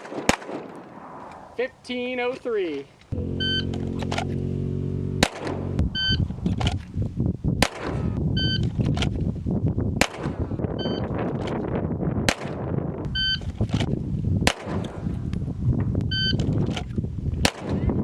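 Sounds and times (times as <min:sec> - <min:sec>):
pistol shots: 0:00.0 - 0:00.8, 0:05.2 - 0:05.7, 0:07.6 - 0:08.0, 0:14.5 - 0:15.0
low rumble: 0:03.1 - 0:08.6
short electronic beep: 0:03.2 - 0:04.1, 0:05.9 - 0:06.2, 0:10.8 - 0:11.0, 0:13.1 - 0:13.4, 0:16.1 - 0:16.4.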